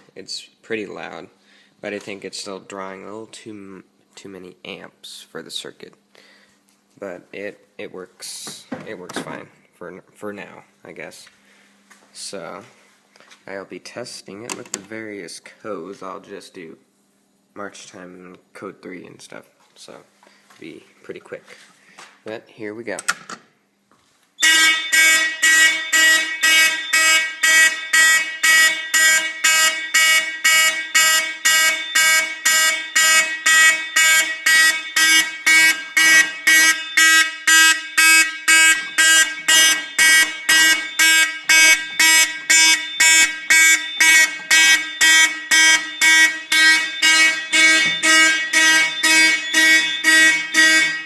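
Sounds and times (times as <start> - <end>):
fire alarm horn pulsing: 24.4 - 51.0.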